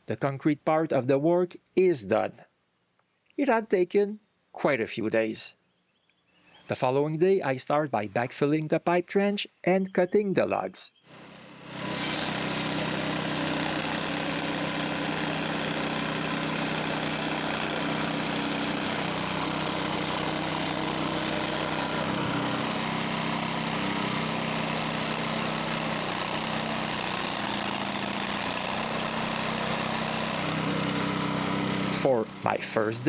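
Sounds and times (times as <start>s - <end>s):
engine running steadily: 11.2s - 33.0s.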